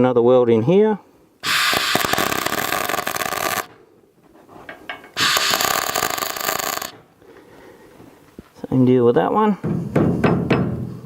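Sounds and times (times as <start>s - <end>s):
arc welder crackling: 1.4s - 3.7s, 5.2s - 7.0s.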